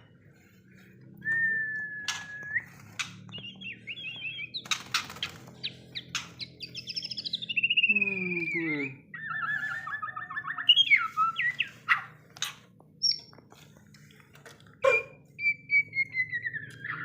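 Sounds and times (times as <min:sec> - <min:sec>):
bird singing trills and whistles: 0:01.1 - 0:12.2, 0:13.0 - 0:13.3, 0:14.8 - 0:17.0
sharp bird clicks: 0:02.0 - 0:07.8.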